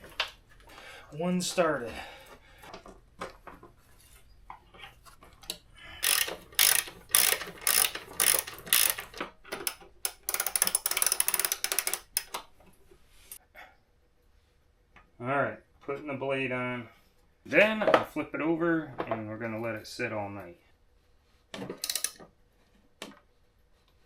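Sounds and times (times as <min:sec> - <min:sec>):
ratchet wrench clicking: 0:06.0 - 0:12.4, 0:21.8 - 0:22.2.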